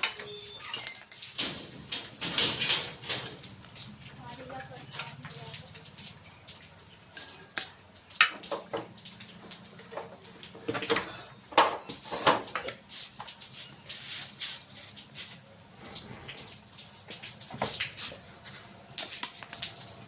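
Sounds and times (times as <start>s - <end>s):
metallic clinks of hand tools: 0.7s - 1.2s.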